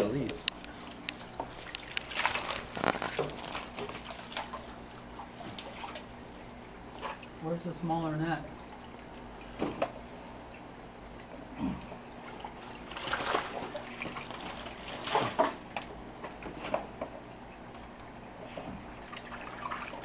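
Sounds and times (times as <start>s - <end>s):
water splashing and dripping: 1.3s - 7.5s, 8.5s - 10.0s, 12.2s - 15.9s, 18.9s - 20.0s.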